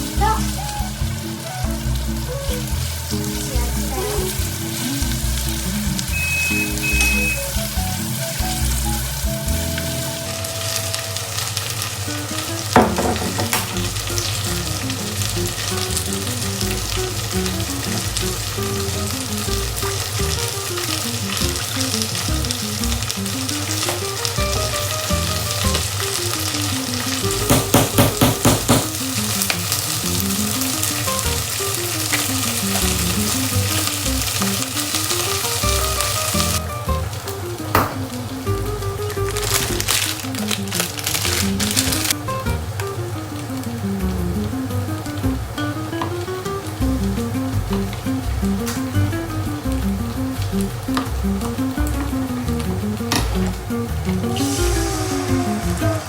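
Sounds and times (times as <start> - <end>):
food sizzling in a pan: 0.0 - 56.0
single knock: 37.8 - 38.0.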